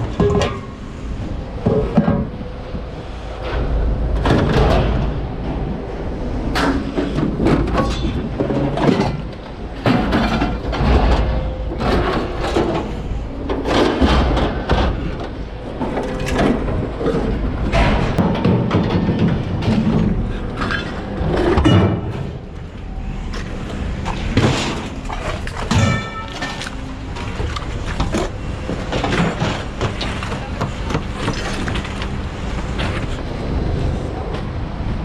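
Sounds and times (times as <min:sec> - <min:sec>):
scrap metal clanking onto pile: 0:24.2 - 0:32.1.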